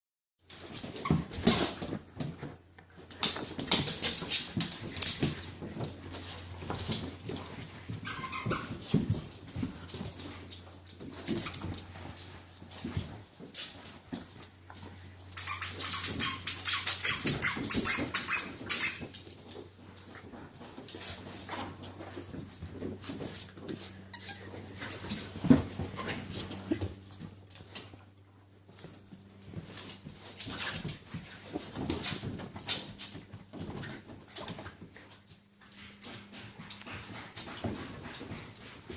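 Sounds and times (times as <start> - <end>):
squeaky toy high squeaks: 8.0 - 8.7, 15.4 - 19.0.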